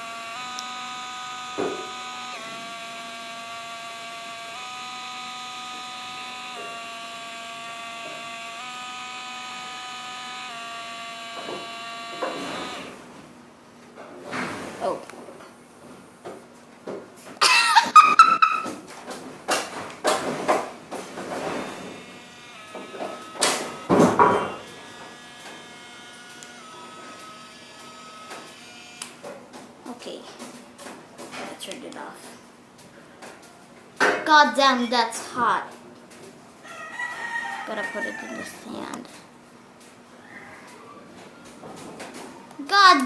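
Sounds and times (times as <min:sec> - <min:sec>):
small motor whine: 0:00.0 - 0:13.1, 0:21.2 - 0:29.2.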